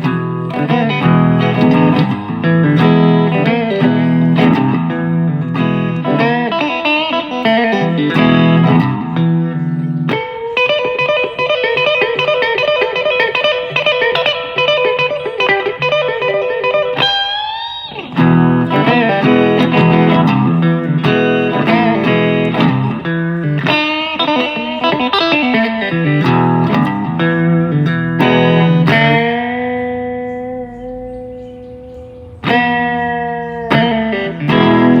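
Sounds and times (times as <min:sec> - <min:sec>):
electric guitar blues lines: 0:00.0 - 0:35.0.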